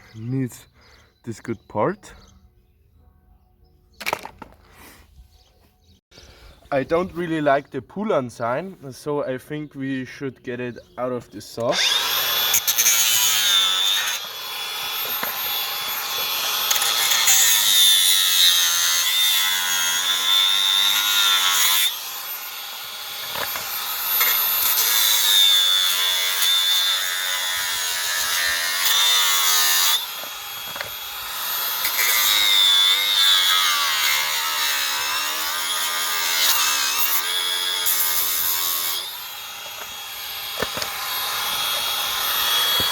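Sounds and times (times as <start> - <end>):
power tool motor whining: 11.7 - 19.2, 19.9 - 42.9.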